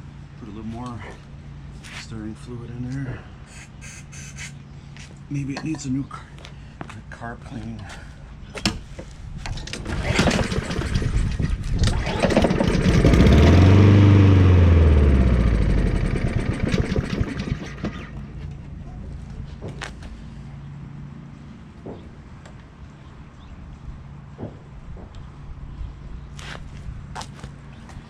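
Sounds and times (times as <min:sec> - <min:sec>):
lawnmower engine sputtering: 0:09.5 - 0:18.5.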